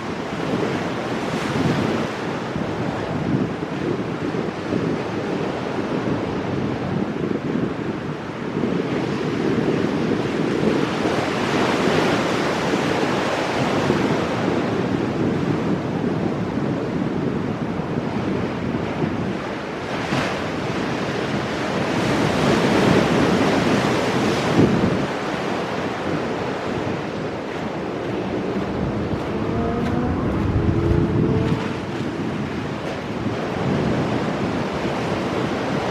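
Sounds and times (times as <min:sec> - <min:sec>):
surf breaking over rocks: 0:25.8 - 0:34.6.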